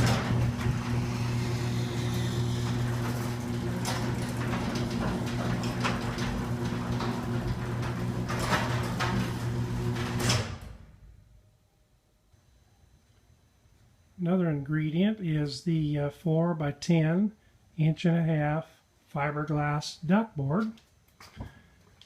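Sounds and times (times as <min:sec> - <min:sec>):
garage door panels rattling: 0:00.0 - 0:11.0
garage door opener motor hum: 0:00.0 - 0:11.2.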